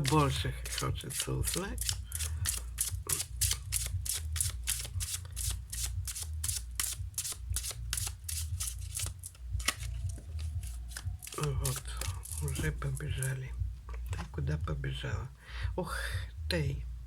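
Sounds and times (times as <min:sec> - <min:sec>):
cards being shuffled: 0:00.0 - 0:13.4.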